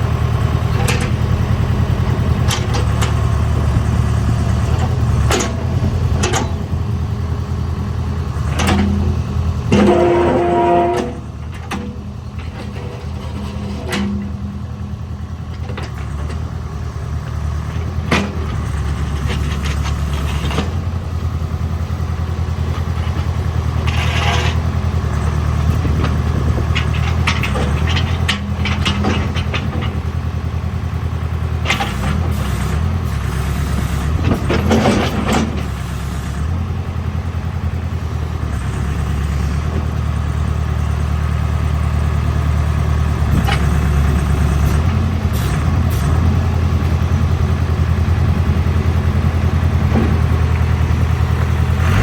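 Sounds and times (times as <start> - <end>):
diesel engine running: 0.0 - 52.0
metal clanks and scrapes: 0.6 - 6.8, 8.5 - 14.9, 15.5 - 16.4, 17.7 - 21.0, 22.6 - 30.2, 31.6 - 35.9, 43.3 - 48.5, 49.8 - 52.0.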